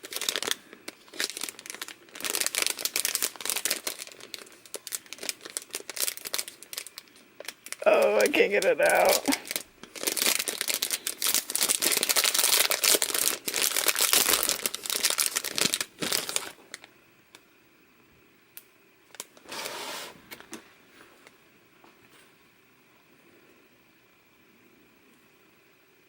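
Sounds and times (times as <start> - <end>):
packaging crinkling and tearing: 0.0 - 16.9.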